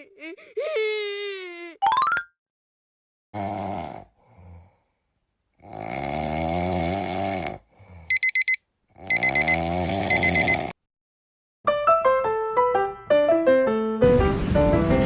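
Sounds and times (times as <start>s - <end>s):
electronic alarm clock beeps: 8.1s - 10.7s.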